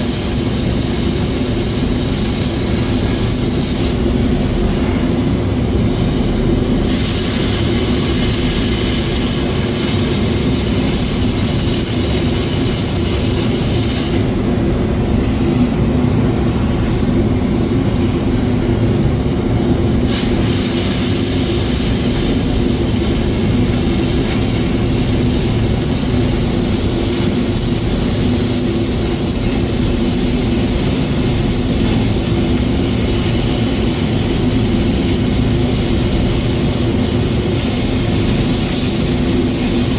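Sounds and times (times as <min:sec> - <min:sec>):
machinery rumble and hum: 0:00.0 - 0:39.9.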